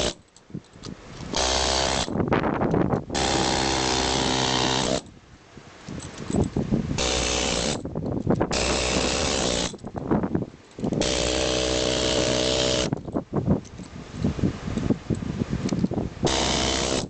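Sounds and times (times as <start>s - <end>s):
pneumatic air hammer chiselling concrete: 0.0s - 0.2s, 1.3s - 2.2s, 3.1s - 5.1s, 7.0s - 7.9s, 8.5s - 9.8s, 10.9s - 13.0s, 16.2s - 17.0s.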